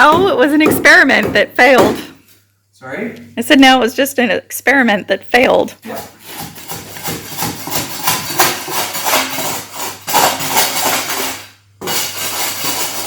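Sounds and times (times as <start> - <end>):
hand tool scraping and knocking: 5.8 - 13.0.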